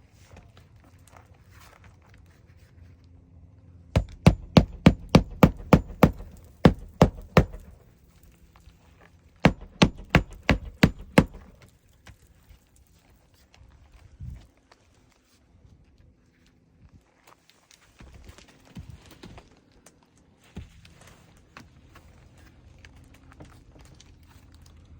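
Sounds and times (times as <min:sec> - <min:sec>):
hammer driving nails into shingle: 0:04.0 - 0:07.8, 0:09.5 - 0:11.6.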